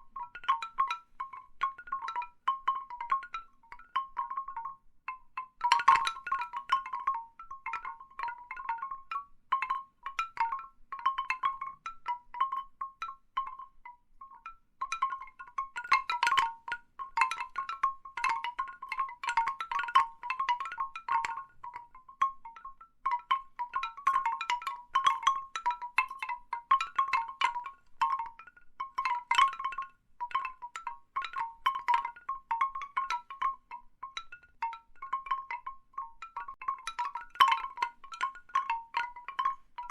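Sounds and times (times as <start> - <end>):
bamboo wind chimes knocking: 0.0 - 39.9.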